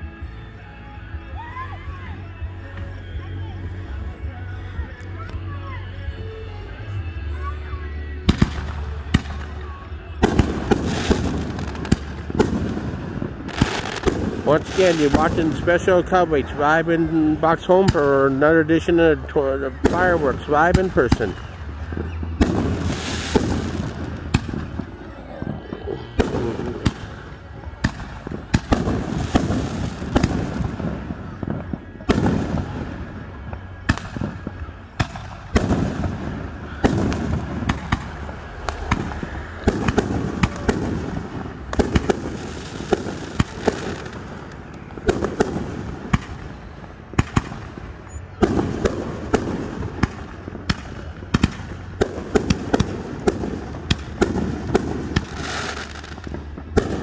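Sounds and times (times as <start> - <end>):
fireworks bangs and crackles: 6.9 - 57.0.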